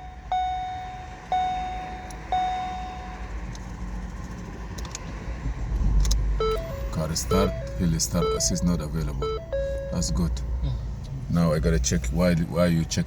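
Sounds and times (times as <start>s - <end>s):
dashboard warning chime: 0.0s - 3.5s, 6.4s - 10.5s
car engine rumble: 0.0s - 13.0s.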